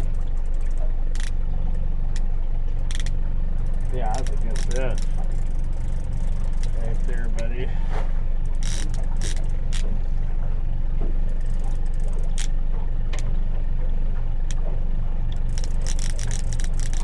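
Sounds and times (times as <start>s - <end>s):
boat motor running: 0.0s - 17.0s
short sharp clicks: 3.8s - 5.2s.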